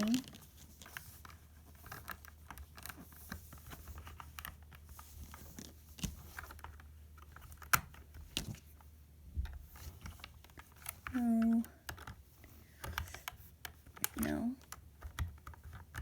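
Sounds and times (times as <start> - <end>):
plastic bricks clicking and knocking: 9.4 - 12.2.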